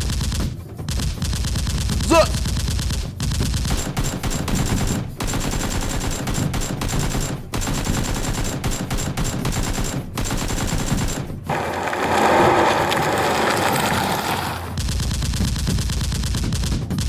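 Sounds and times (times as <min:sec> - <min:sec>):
automatic gunfire sound effects: 0:03.6 - 0:11.4.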